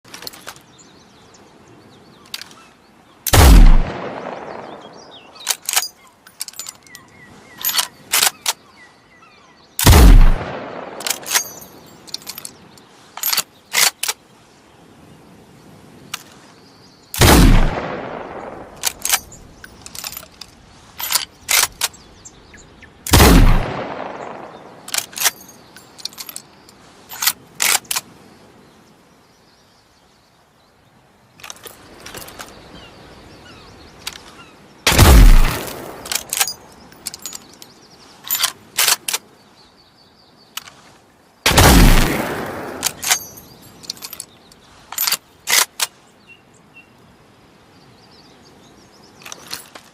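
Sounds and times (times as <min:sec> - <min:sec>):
rifle bolt metallic clicks: 0:02.2 - 0:02.6, 0:05.4 - 0:08.6, 0:09.8 - 0:14.2, 0:17.2 - 0:22.0, 0:23.1 - 0:26.5, 0:27.1 - 0:28.1, 0:34.0 - 0:39.3, 0:41.5 - 0:46.0
rifle shots echoing: 0:03.3 - 0:05.4, 0:09.8 - 0:11.6, 0:17.2 - 0:19.2, 0:23.1 - 0:25.1, 0:34.9 - 0:36.5, 0:41.5 - 0:43.4.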